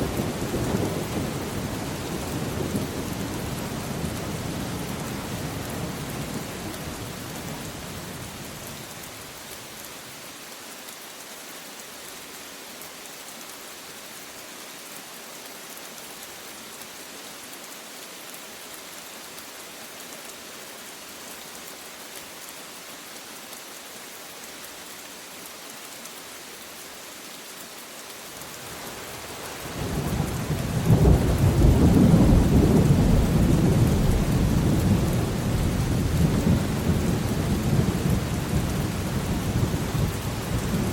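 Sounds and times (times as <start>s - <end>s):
steady rain: 0.0s - 40.9s
rolling thunder: 30.0s - 40.9s.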